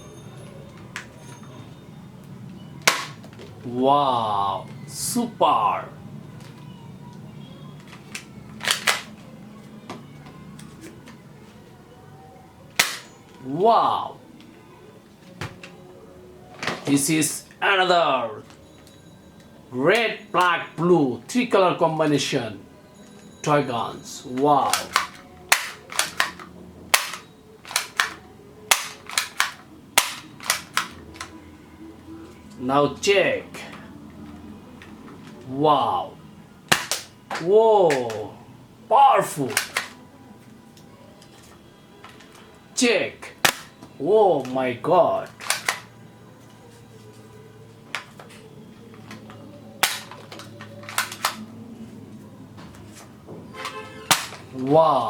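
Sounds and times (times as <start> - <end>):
plastic toy gun snapping: 2.8 - 3.2, 8.1 - 9.1, 12.8 - 13.1, 24.7 - 31.3, 36.7 - 38.2, 39.5 - 40.0, 43.4 - 43.7, 45.3 - 45.9, 49.8 - 51.4, 54.1 - 54.4
toy blaster firing snaps: 24.8 - 31.0.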